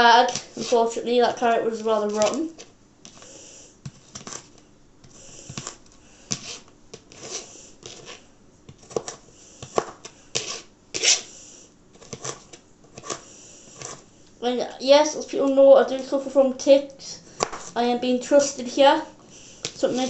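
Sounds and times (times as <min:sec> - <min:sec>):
knife scraping: 0:00.2 - 0:01.0, 0:03.9 - 0:11.3, 0:12.0 - 0:14.1.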